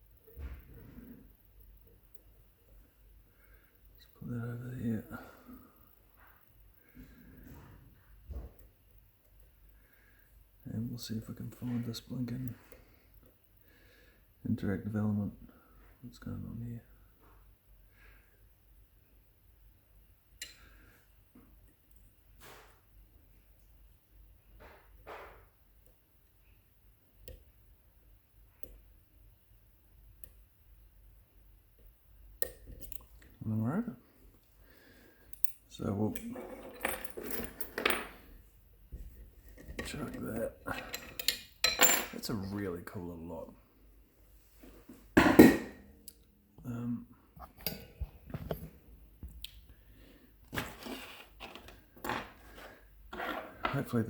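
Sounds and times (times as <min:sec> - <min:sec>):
rustling handling noises: 0:50.4 - 0:53.9
metal scrapes: 0:50.6 - 0:53.9.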